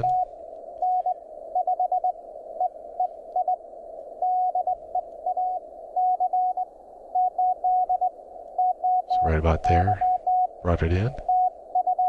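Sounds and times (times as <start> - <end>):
morse code tone: 0.0 - 0.2
radio band noise hiss: 0.0 - 0.3, 9.1 - 11.3.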